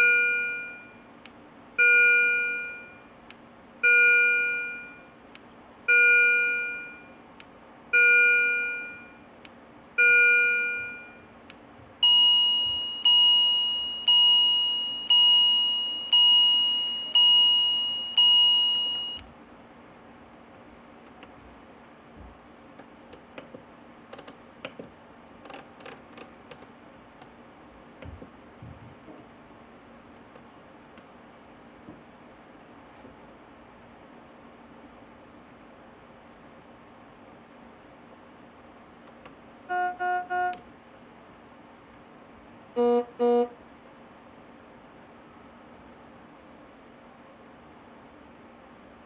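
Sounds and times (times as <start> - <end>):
patient monitor alarm beeps: 0.0 - 1.0, 1.8 - 3.1, 3.8 - 5.1, 5.9 - 7.1, 8.0 - 9.2, 10.0 - 11.3, 12.0 - 19.2
faint steady hum: 0.0 - 49.0.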